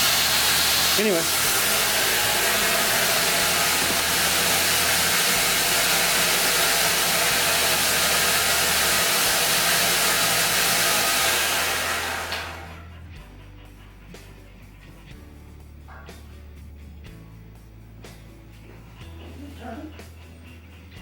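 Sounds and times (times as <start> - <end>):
belt grinder running: 0.0 - 12.9.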